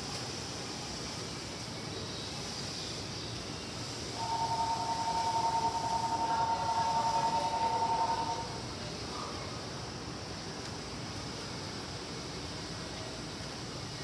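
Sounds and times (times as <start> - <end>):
rain hissing: 0.0 - 8.9
pulsing two-tone warning signal: 4.2 - 8.7.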